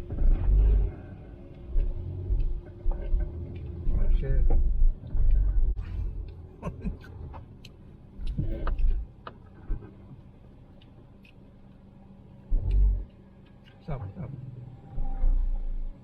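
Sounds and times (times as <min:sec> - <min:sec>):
car rumbling over bumps: 0:00.0 - 0:07.6, 0:12.5 - 0:13.1, 0:13.9 - 0:16.0.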